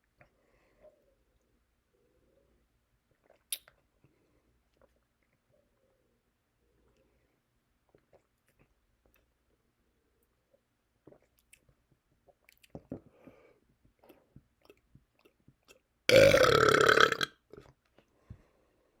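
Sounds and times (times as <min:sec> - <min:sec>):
faint mouth clicks: 0:03.2 - 0:03.8
loud burp: 0:16.1 - 0:17.4.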